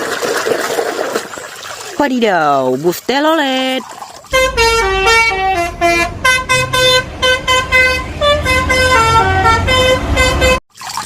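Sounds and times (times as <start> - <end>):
low rumble: 4.3 - 9.0
multi-tone musical bus horn: 4.3 - 10.6.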